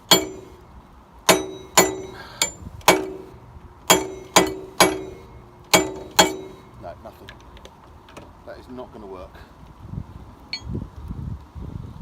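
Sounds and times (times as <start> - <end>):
hammer striking metal: 0.0 - 0.6, 1.2 - 6.8.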